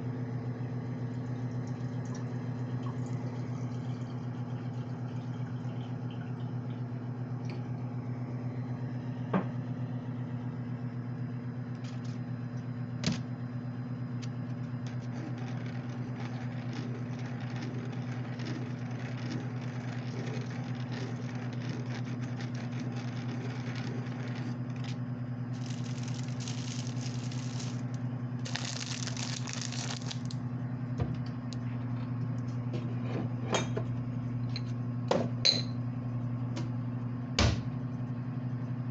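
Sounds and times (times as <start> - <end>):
microwave oven humming: 0.0 - 38.9
food packaging rustling: 25.5 - 30.4.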